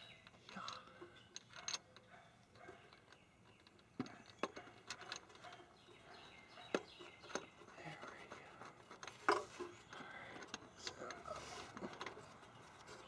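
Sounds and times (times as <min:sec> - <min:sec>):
small parts clicking and tapping: 0:00.1 - 0:05.7.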